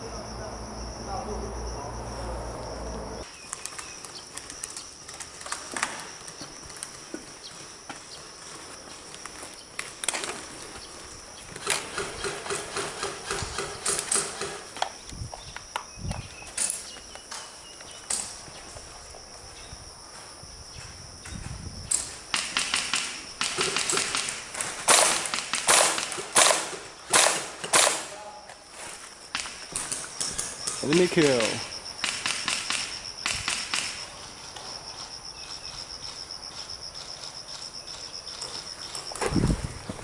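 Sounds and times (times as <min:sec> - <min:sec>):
crunching footsteps: 0:03.2 - 0:12.3.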